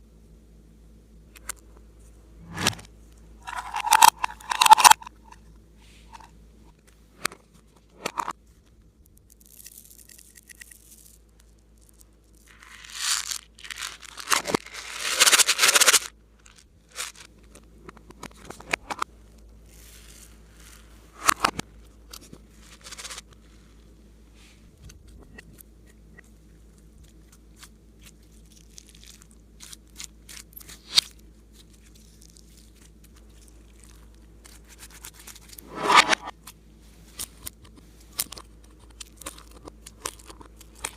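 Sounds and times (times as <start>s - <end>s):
clay slime crackling by hand: 8.4s - 24.0s, 26.2s - 35.6s.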